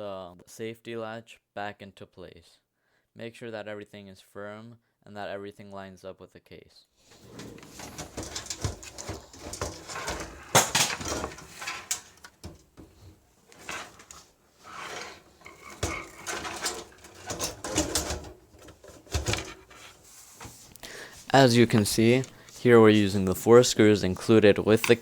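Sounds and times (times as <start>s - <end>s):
computer case parts clattering: 7.1s - 25.0s.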